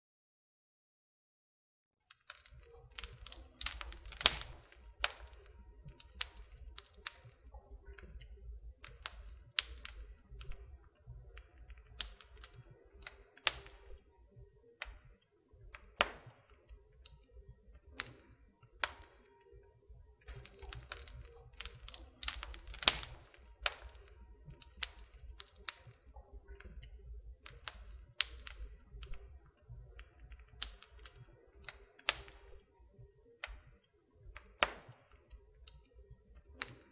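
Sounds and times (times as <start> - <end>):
campfire crackling and popping: 2.2 - 32.8, 33.4 - 36.9.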